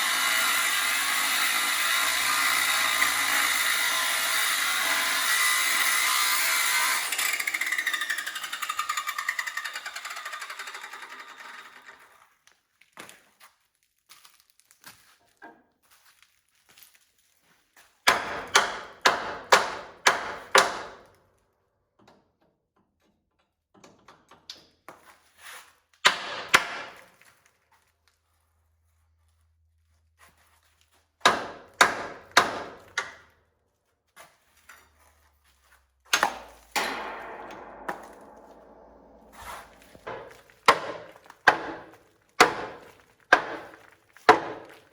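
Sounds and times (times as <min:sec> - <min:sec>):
sharp ringing metallic knocks: 0:36.2 - 0:42.8.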